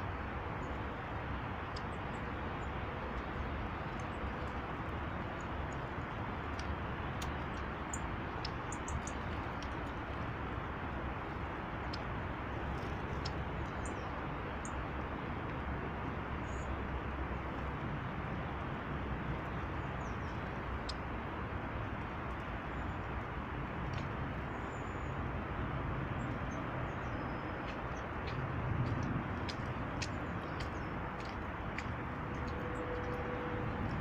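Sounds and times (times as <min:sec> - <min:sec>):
rushing noise with low rumble: 0:00.0 - 0:34.0
small birds chirping: 0:07.2 - 0:09.9, 0:26.2 - 0:33.2.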